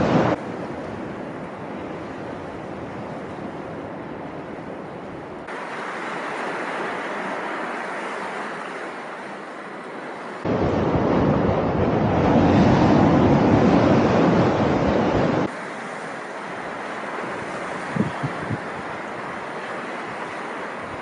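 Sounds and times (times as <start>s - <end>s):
wind rushing over microphone: 0.0s - 5.6s, 10.4s - 15.5s, 17.3s - 19.2s
low wind buffeting: 0.0s - 8.3s, 10.0s - 21.0s.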